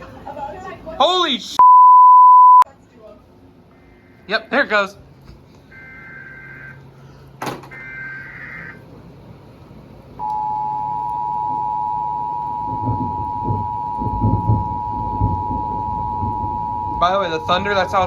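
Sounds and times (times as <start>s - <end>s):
two-tone attention signal: 1.6s - 2.6s, 10.2s - 18.0s
warbling digital data tones: 10.3s - 18.0s.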